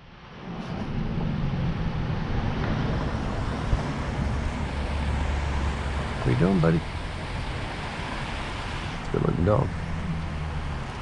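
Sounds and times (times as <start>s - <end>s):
vehicle engine running: 0.6s - 11.0s.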